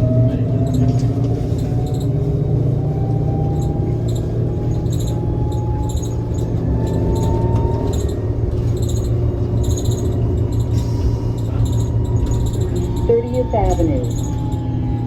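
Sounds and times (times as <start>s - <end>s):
bus interior hum and road noise: 0.0s - 15.0s.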